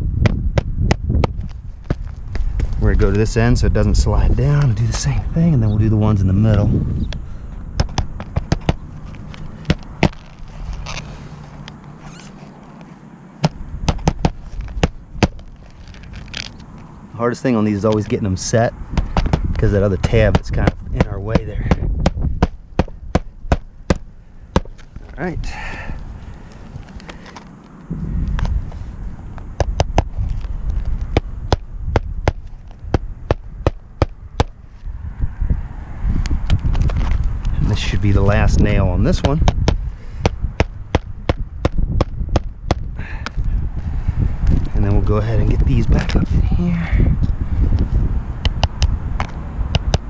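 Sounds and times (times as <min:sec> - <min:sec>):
wind rumble on microphone: 0:00.0 - 0:50.0
hammer striking nails: 0:13.4 - 0:15.4, 0:20.2 - 0:24.7.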